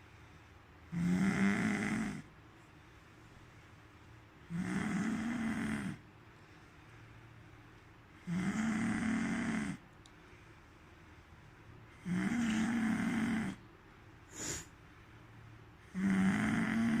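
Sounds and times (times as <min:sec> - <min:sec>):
person snoring: 0:00.9 - 0:02.3, 0:04.5 - 0:06.0, 0:08.2 - 0:09.8, 0:12.0 - 0:13.6, 0:15.9 - 0:17.0.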